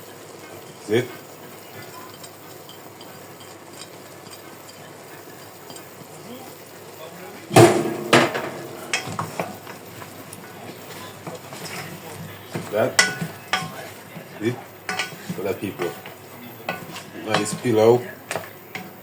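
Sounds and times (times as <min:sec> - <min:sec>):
food sizzling in a pot: 0:00.0 - 0:19.0
spoon knocking against pot: 0:07.6 - 0:09.9, 0:12.5 - 0:13.8, 0:14.9 - 0:17.6.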